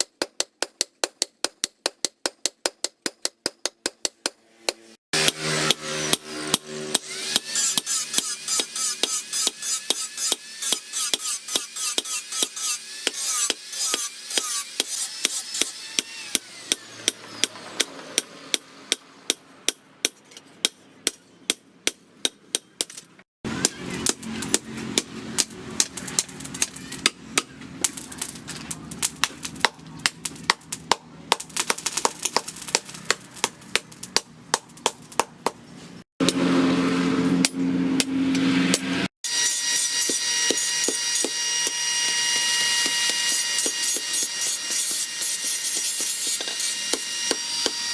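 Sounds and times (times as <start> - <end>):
hammer striking steel on anvil: 3.6 - 27.6.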